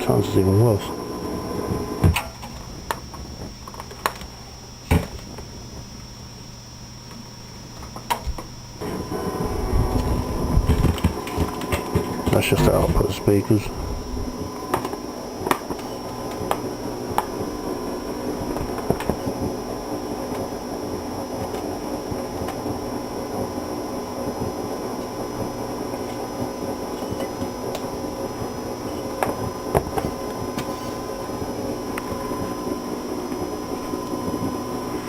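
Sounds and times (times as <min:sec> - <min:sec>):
electrical buzz and hum: 0:00.0 - 0:35.0
high electrical whine: 0:00.0 - 0:35.0.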